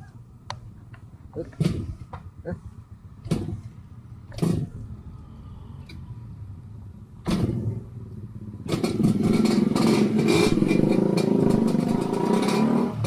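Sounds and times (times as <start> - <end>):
two-stroke motorcycle engine: 7.3 - 13.0.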